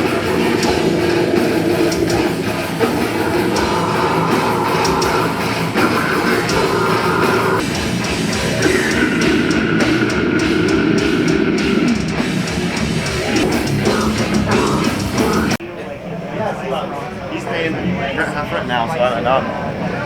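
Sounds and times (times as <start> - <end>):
heavy metal music: 0.0 - 15.6.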